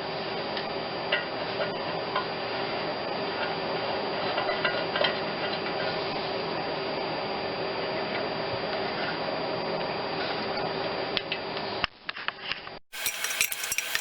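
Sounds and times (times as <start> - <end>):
steady background hum: 0.0 - 14.0
metallic clicks of small parts: 13.0 - 14.0.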